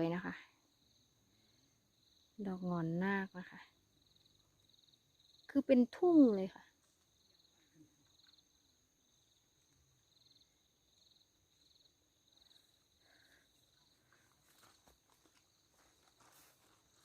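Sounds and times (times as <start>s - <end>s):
insect chirping trill: 0.0s - 17.0s
footstep rustles: 14.0s - 17.0s.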